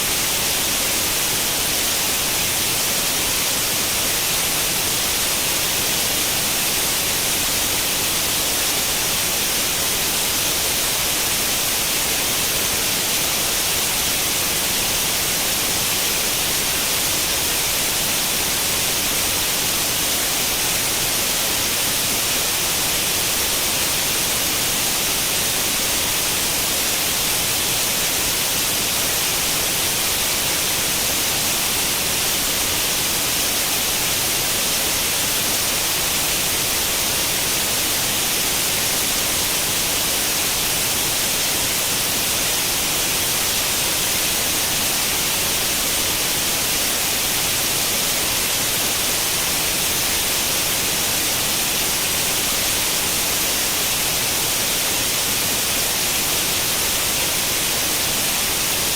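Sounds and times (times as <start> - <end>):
static white noise hiss: 0.0 - 58.9.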